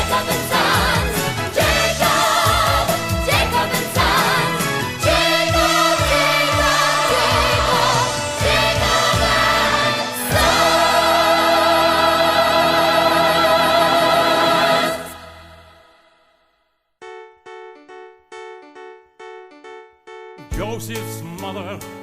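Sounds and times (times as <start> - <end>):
choir and orchestra: 0.0 - 16.0.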